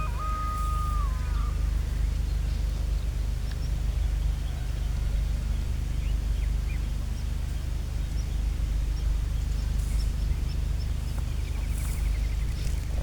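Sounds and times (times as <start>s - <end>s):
small birds chirping: 0.0s - 13.0s
steady low rumble: 0.0s - 13.0s.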